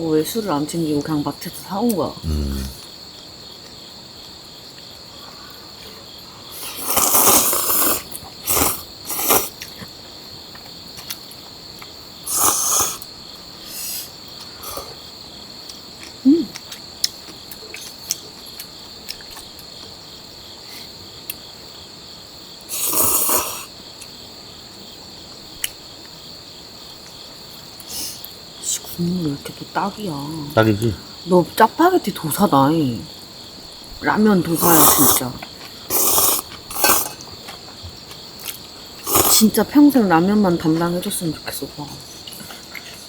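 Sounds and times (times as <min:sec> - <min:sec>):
crickets chirring: 0:00.0 - 0:43.0
slurping eating sounds: 0:02.2 - 0:02.9, 0:06.5 - 0:09.9, 0:12.3 - 0:13.1, 0:22.7 - 0:23.7, 0:34.6 - 0:35.2, 0:35.9 - 0:37.2, 0:38.4 - 0:39.4.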